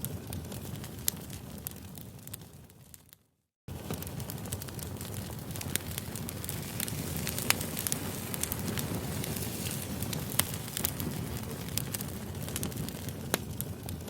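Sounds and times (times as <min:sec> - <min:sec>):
fire crackles and pops: 0:00.0 - 0:14.0
burning wood hissing: 0:03.7 - 0:14.0.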